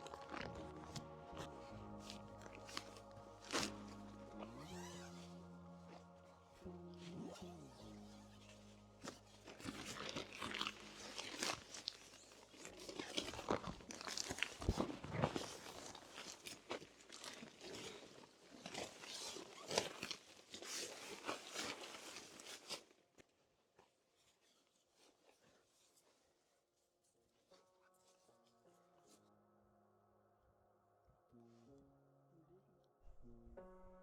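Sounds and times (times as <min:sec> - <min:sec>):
crunching and rustling: 0:09.0 - 0:22.9.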